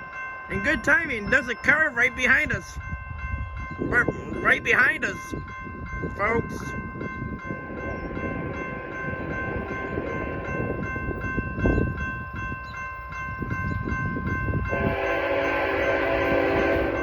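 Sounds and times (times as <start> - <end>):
railroad crossing bell ringing: 0.0 - 17.0
locomotive horn chord: 14.7 - 17.0.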